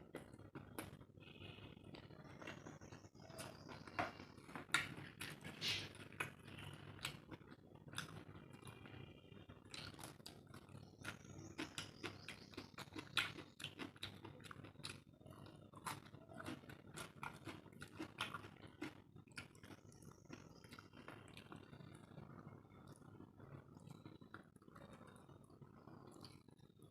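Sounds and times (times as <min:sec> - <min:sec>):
person chewing and smacking: 0:01.9 - 0:22.0.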